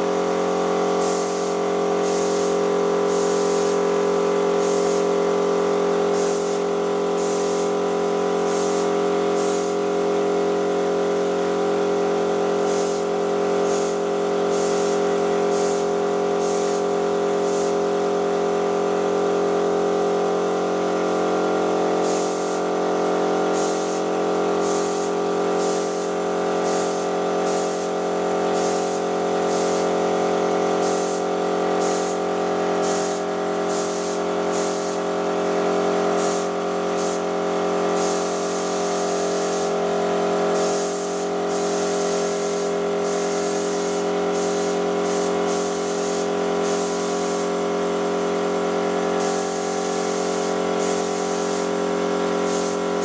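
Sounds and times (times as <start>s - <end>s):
hissing spray bursts: 0.9s - 5.2s, 6.0s - 7.8s, 8.4s - 9.9s, 12.6s - 17.8s, 22.0s - 22.7s, 23.5s - 30.0s, 30.8s - 35.1s, 36.1s - 37.3s, 37.9s - 39.8s, 40.5s - 47.6s, 49.2s - 51.8s, 52.4s - 53.0s.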